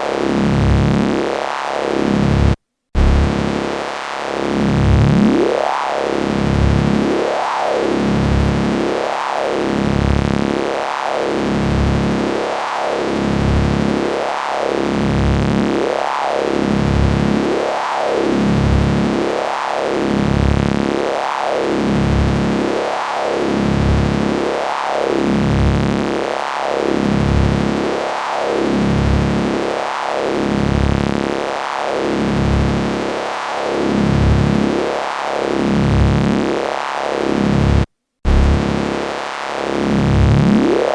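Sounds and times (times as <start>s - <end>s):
electric hum with sweeping tone: 2.2s - 3.6s, 37.7s - 39.0s.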